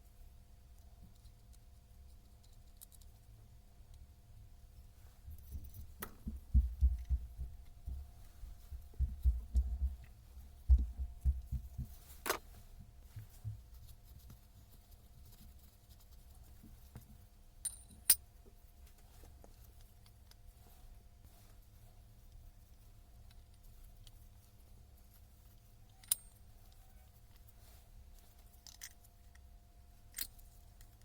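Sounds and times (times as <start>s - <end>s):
faint steady hum: 0.0s - 31.0s
handling knocks and bumps: 5.3s - 14.4s.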